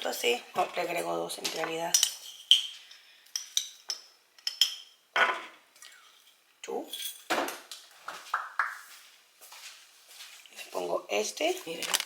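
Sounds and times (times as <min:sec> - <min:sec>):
metal spoon clinking cup: 0:01.9 - 0:02.7, 0:03.3 - 0:05.0
spoon scraping: 0:01.9 - 0:05.0.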